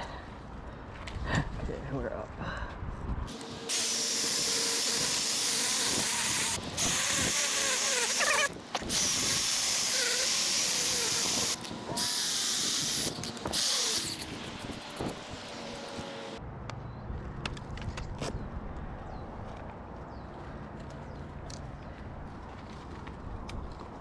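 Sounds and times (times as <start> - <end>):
power saw cutting branch: 3.3 - 16.4.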